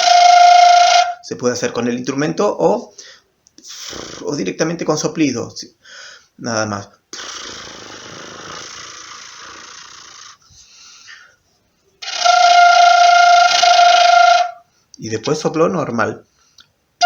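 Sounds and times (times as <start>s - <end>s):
flutter-tongued breath: 3.0s - 4.3s, 7.2s - 11.4s
quena note: 12.0s - 14.6s.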